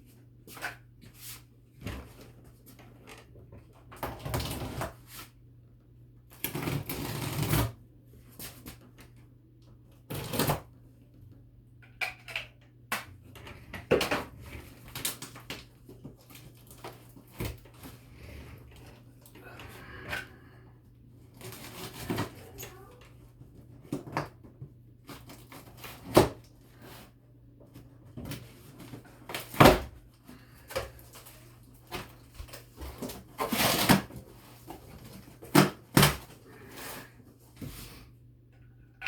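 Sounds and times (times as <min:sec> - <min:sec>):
cardboard box rustling and scraping: 0:30.9 - 0:37.9.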